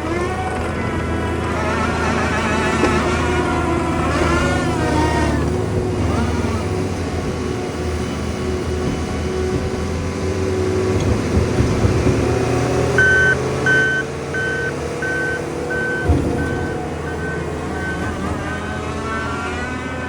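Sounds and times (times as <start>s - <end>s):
diesel engine running under load: 0.0s - 20.0s
backup alarm beeping: 13.0s - 18.7s
sharp thump: 15.9s - 17.2s.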